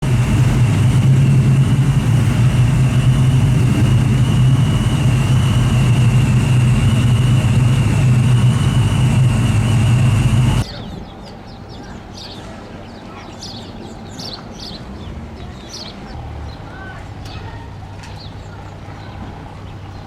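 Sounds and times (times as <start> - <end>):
car engine running: 0.0 - 10.6.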